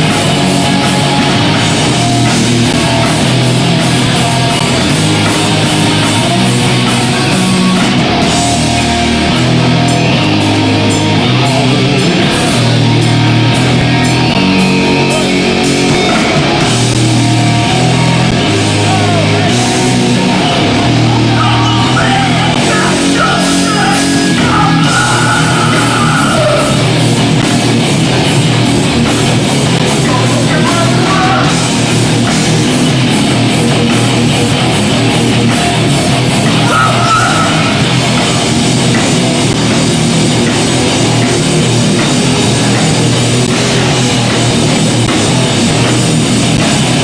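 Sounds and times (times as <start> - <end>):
punk band playing loud: 0.0 - 47.0
person yelling vocals: 21.2 - 26.8.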